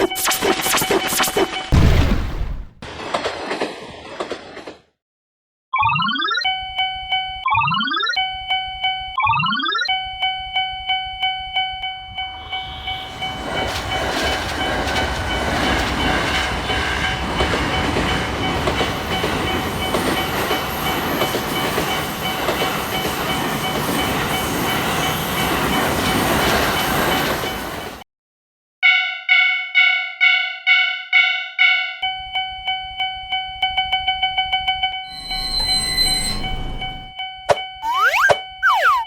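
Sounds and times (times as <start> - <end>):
level-crossing bell ringing: 5.8 - 14.2
train passing: 11.4 - 28.0
rising boing effect: 37.8 - 39.0.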